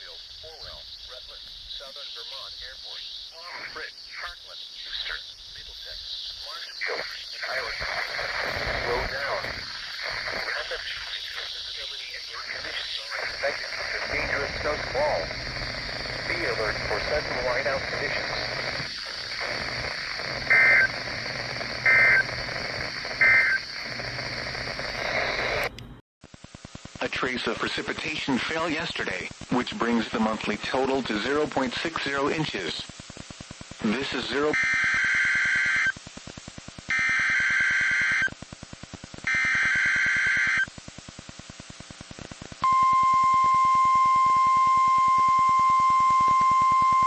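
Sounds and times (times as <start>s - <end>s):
raspy digital data bursts: 0.0s - 25.6s
faint pulsing buzz: 0.0s - 26.0s
radio hiss: 0.0s - 47.0s
two-tone digital squawks: 15.8s - 21.0s, 21.8s - 22.3s, 23.2s - 23.8s.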